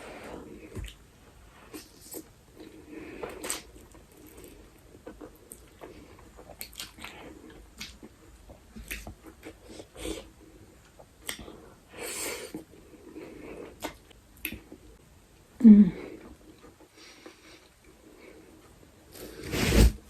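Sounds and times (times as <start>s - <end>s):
person chewing noodles: 1.6s - 14.8s.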